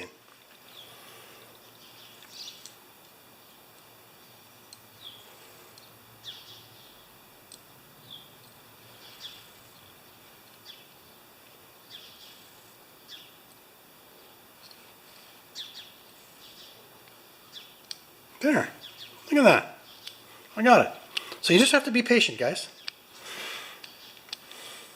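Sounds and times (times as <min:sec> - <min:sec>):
faint bird chirps: 0:04.2 - 0:07.1, 0:08.0 - 0:11.2, 0:11.8 - 0:13.4, 0:14.6 - 0:17.8.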